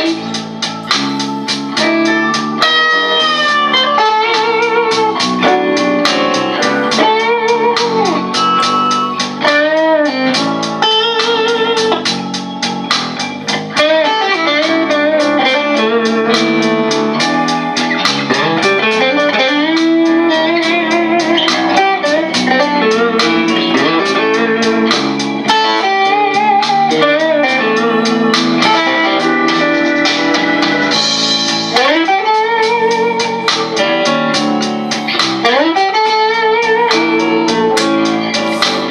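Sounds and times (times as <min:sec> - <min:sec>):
blues backing track: 0:00.0 - 0:38.9
electric guitar blues lead: 0:00.0 - 0:38.9.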